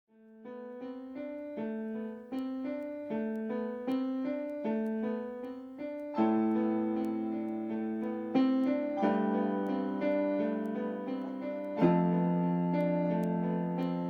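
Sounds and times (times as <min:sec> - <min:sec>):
piano melody on keyboard: 0:00.1 - 0:14.0
piano chord with bass notes: 0:06.2 - 0:14.0.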